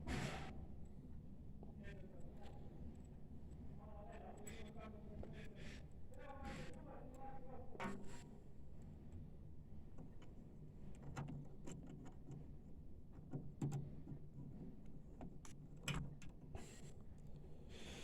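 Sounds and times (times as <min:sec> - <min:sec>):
light clicks of small parts: 0:09.9 - 0:12.5, 0:13.2 - 0:17.4.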